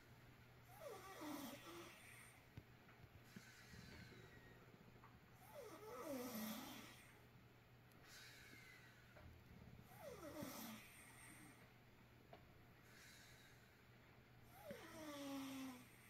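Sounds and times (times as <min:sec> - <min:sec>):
person snoring: 0:00.7 - 0:02.4, 0:05.4 - 0:07.2, 0:09.9 - 0:11.1, 0:14.5 - 0:16.0.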